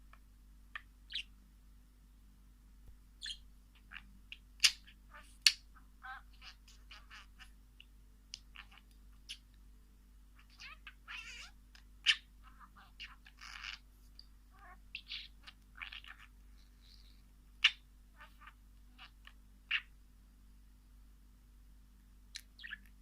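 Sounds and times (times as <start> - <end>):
birds chirping: 0.0 - 1.4, 3.2 - 9.5, 10.4 - 20.0, 22.3 - 23.0.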